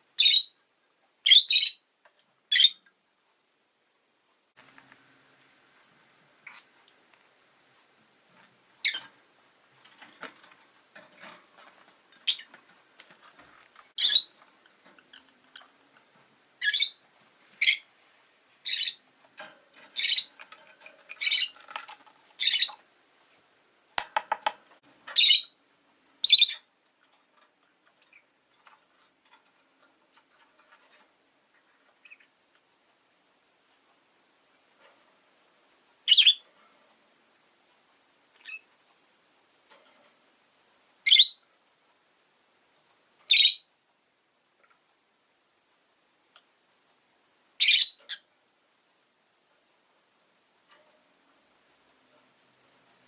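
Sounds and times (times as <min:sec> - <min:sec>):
lovebirds chirping: 0:00.2 - 0:00.6, 0:01.2 - 0:01.9, 0:02.5 - 0:02.9, 0:08.8 - 0:09.1, 0:12.2 - 0:12.6, 0:13.9 - 0:15.8, 0:16.6 - 0:17.9, 0:18.6 - 0:19.1, 0:19.9 - 0:20.5, 0:21.1 - 0:22.8, 0:25.2 - 0:25.6, 0:26.2 - 0:26.7, 0:36.0 - 0:36.5, 0:38.4 - 0:38.7, 0:41.0 - 0:41.4, 0:43.3 - 0:43.7, 0:47.6 - 0:48.3
faint clicks: 0:04.5 - 0:05.1, 0:46.3 - 0:47.0.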